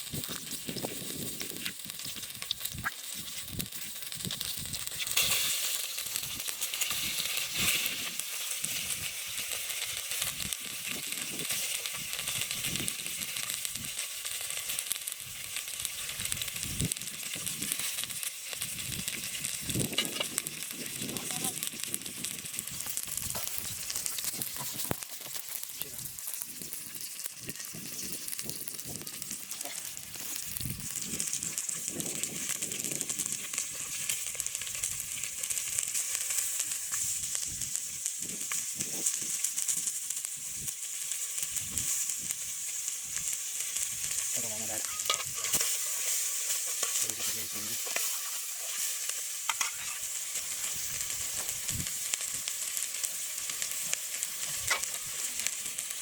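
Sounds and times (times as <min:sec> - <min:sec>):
food sizzling in a pan: 0:00.0 - 0:56.0
stirring clicks and knocks: 0:44.2 - 0:50.0.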